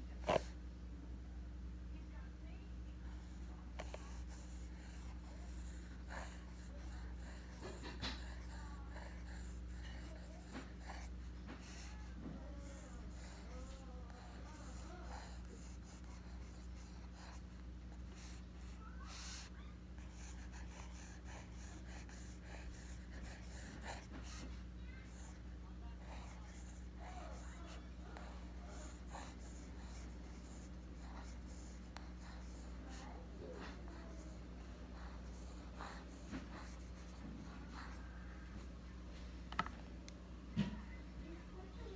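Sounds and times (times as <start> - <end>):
steady low hum: 0.0 - 41.9
pencil scratching on paper: 3.8 - 18.4, 20.0 - 24.5, 26.1 - 38.0.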